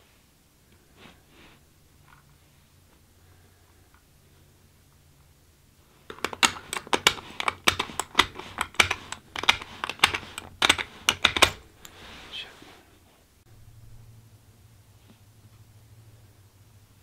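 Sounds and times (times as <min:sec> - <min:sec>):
rounds clicking into rifle magazine: 0:06.1 - 0:11.6.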